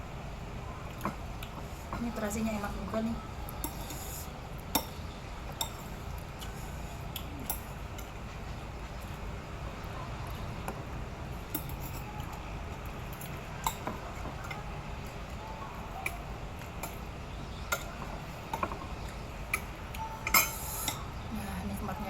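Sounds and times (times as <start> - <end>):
tableware clinking on a plate: 3.6 - 4.1, 13.1 - 14.6, 17.7 - 21.1.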